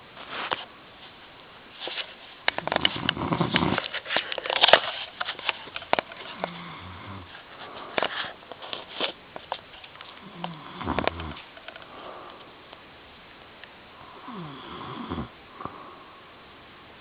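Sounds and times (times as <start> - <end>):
clicks and crackles: 1.8 - 13.8
man snoring: 2.9 - 3.8, 6.3 - 7.3, 10.2 - 11.4, 14.1 - 15.9.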